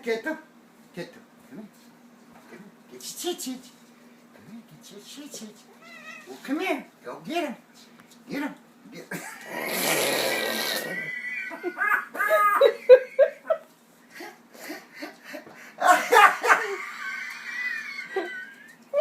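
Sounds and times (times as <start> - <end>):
person laughing hard: 10.8 - 13.6, 15.0 - 19.0.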